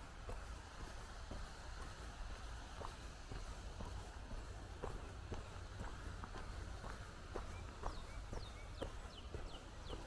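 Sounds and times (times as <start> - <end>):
footsteps walking: 0.1 - 10.0
bird chirping: 7.4 - 10.0.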